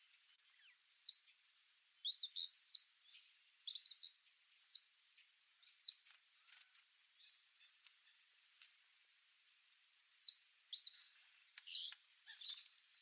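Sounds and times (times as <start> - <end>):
bird singing high downward notes: 0.5 - 1.2, 2.0 - 4.9, 10.1 - 13.0.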